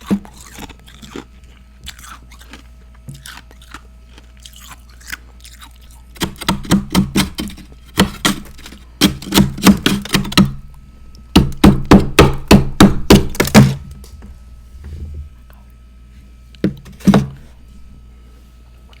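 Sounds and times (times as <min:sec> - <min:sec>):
frost crunching between teeth: 0:00.0 - 0:06.8.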